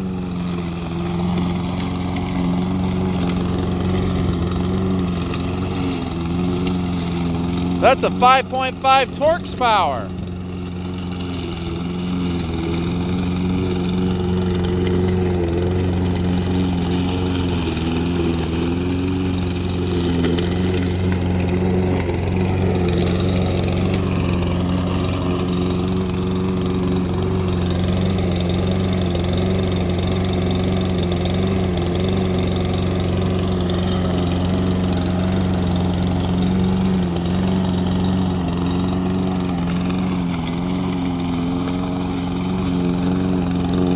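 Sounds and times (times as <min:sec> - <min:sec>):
lawnmower engine running: 0:12.8 - 0:43.9.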